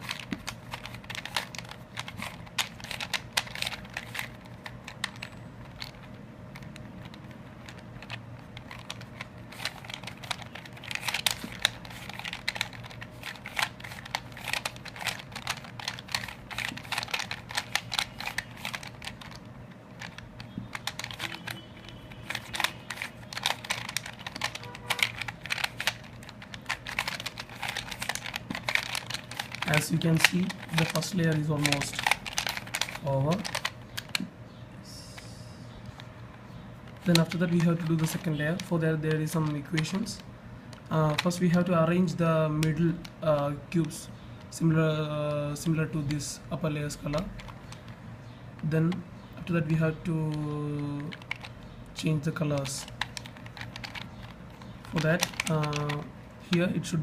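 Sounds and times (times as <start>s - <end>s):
plastic puzzle cube clicking: 0.0s - 34.3s, 36.9s - 40.2s, 40.9s - 41.7s, 47.1s - 48.0s, 49.6s - 56.7s.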